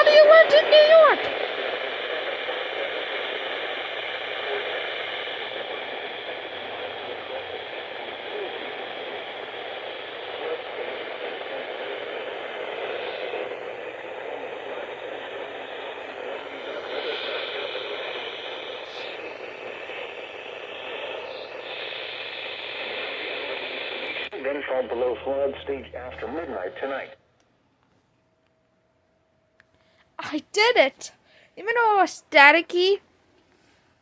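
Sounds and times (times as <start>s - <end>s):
radio static hiss: 0.0s - 27.3s, 30.2s - 33.0s.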